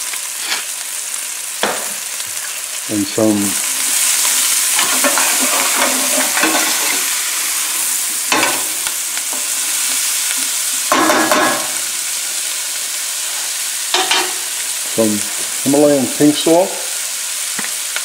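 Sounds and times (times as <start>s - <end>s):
vegetables sizzling in a frying pan: 0.0s - 18.0s.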